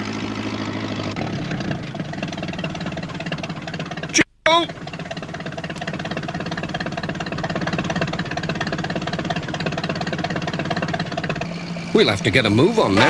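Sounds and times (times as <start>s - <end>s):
van engine chugging: 0.0s - 13.0s.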